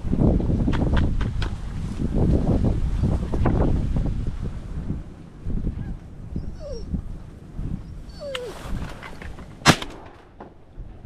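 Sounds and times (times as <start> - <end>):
dog whining: 5.7 - 9.4
loud shotgun shot: 9.6 - 10.6.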